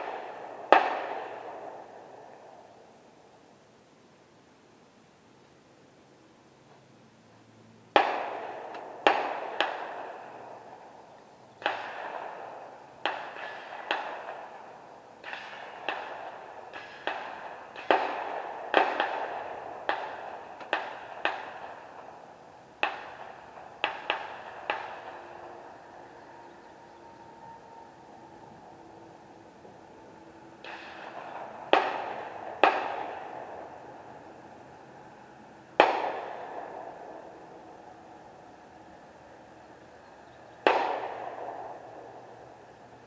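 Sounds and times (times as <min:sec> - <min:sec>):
gunshots with echo: 0:00.0 - 0:02.4, 0:08.0 - 0:10.7, 0:11.6 - 0:14.6, 0:15.2 - 0:22.2, 0:22.8 - 0:25.8, 0:30.6 - 0:34.2, 0:35.8 - 0:37.3, 0:40.6 - 0:42.3.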